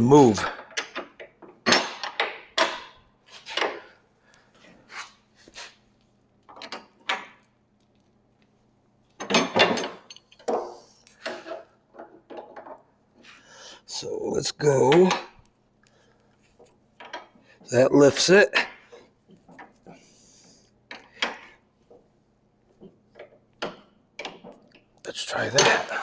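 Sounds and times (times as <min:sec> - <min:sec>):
metal clinks and knocks: 0:09.2 - 0:12.9, 0:17.0 - 0:17.4.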